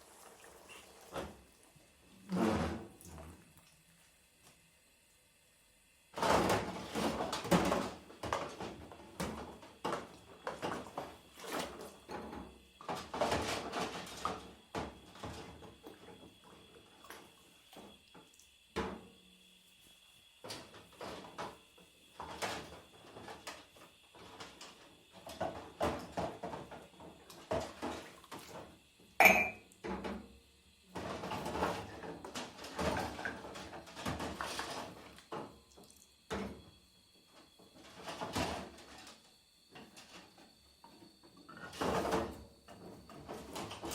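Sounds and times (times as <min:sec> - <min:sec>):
dishes and cutlery clattering: 0:29.2 - 0:29.6
sharp ringing clink: 0:29.2 - 0:29.6.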